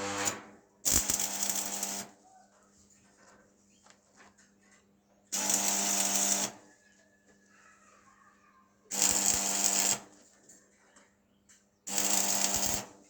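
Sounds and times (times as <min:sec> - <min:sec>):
electric tool buzzing: 0:00.0 - 0:02.0, 0:05.4 - 0:06.6, 0:11.9 - 0:12.9
faint clicks and handling noise: 0:02.3 - 0:05.3.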